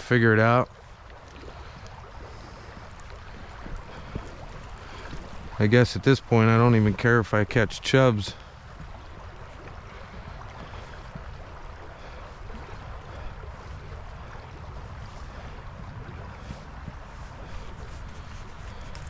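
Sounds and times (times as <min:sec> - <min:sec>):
creek water rushing: 0:00.0 - 0:19.0
wind buffeting microphone: 0:00.9 - 0:19.0.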